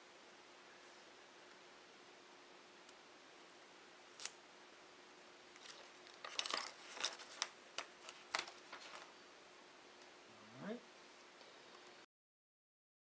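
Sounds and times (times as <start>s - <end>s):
plastic film crackling: 4.1s - 4.4s, 5.5s - 9.2s.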